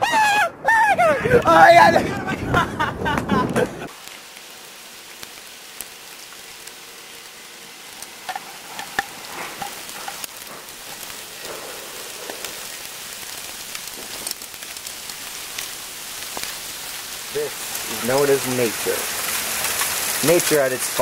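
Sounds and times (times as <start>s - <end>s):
heavy rain pouring: 0.0s - 21.0s.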